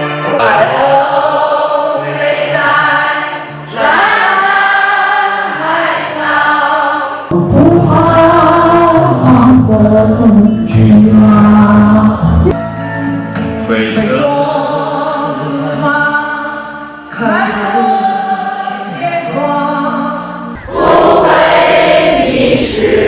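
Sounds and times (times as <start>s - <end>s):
choir singing long held notes: 0.0s - 9.2s, 14.1s - 23.0s.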